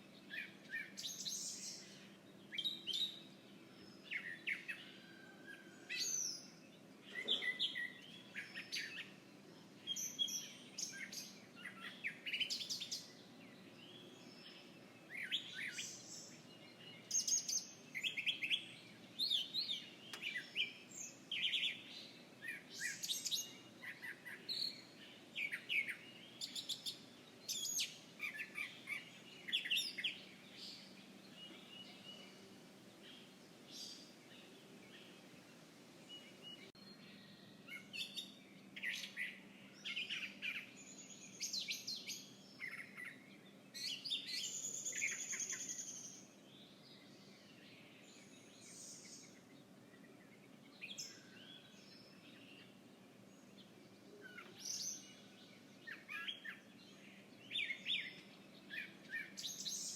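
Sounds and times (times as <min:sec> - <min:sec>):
songbirds chirping and trilling: 0:00.0 - 0:59.9.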